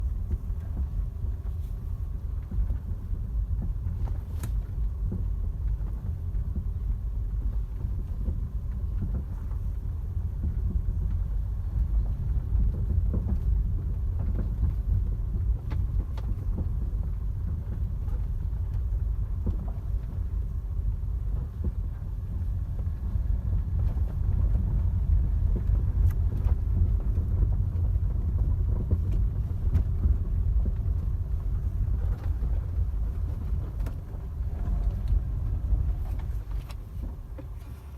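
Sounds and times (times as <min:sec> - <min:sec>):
car low rumble: 0:00.0 - 0:37.9.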